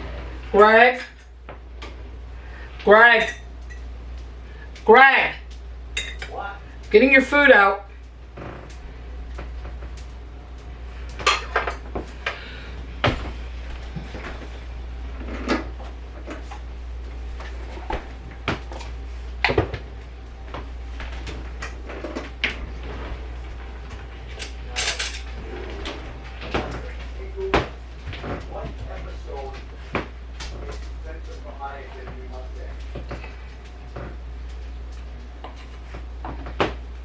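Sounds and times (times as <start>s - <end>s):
steady low hum: 0.0s - 37.0s
dishes and cutlery clattering: 11.2s - 11.8s, 24.4s - 25.4s.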